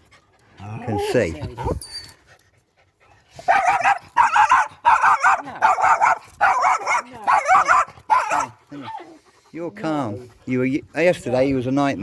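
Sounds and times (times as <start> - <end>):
dog yapping: 3.5 - 9.0.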